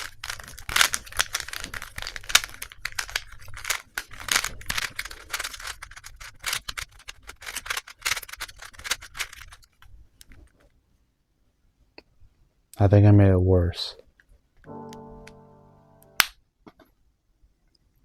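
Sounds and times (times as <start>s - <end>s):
puzzle cube clicking: 0.3s - 9.7s.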